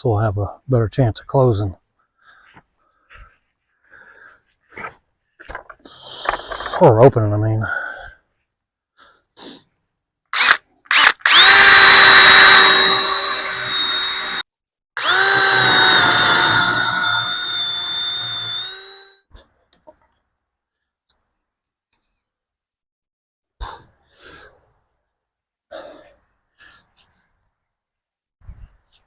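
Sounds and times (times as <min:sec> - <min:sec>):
power drill boring into wood: 0:10.4 - 0:14.4, 0:15.0 - 0:19.2.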